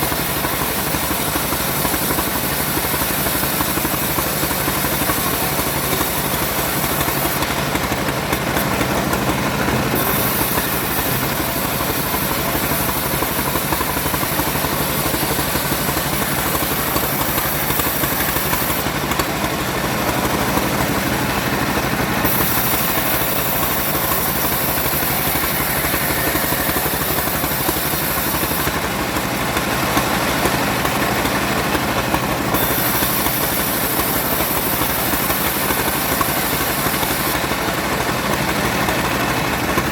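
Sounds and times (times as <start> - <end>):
engine-powered wood saw running: 0.0 - 39.9.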